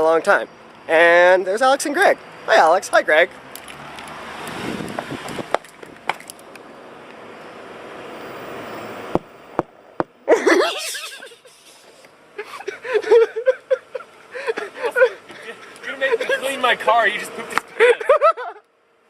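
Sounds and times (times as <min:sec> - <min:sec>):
person crying out: 0:10.3 - 0:11.5.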